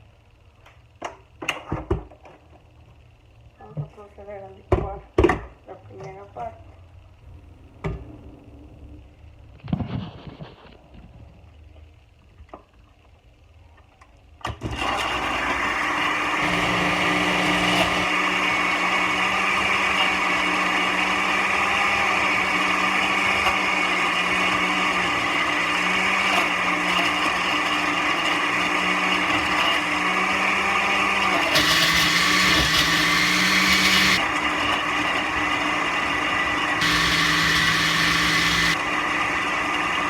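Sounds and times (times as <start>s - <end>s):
electric blender running: 14.6s - 40.0s.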